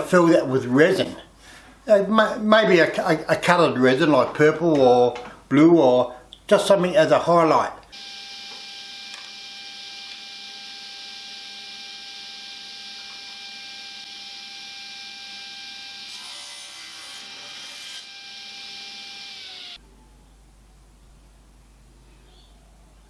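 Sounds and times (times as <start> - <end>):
power saw whining: 7.9 - 19.8.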